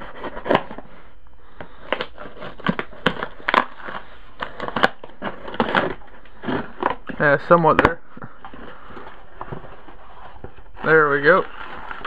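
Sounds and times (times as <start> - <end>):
knife cutting cardboard box: 0.0 - 0.9, 1.8 - 7.9
packing tape tearing: 0.0 - 0.9, 1.8 - 7.9.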